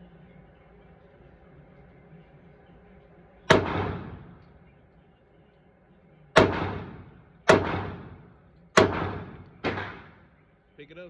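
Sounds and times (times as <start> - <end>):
pistol shots with reverberation: 3.5 - 4.5, 6.4 - 10.4.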